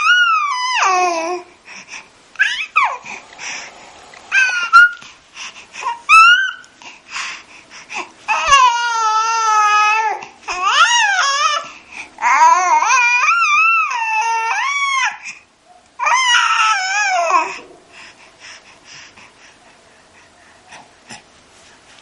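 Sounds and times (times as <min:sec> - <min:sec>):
baby fussing and crying: 0:00.0 - 0:06.8, 0:07.8 - 0:15.3, 0:16.0 - 0:18.1.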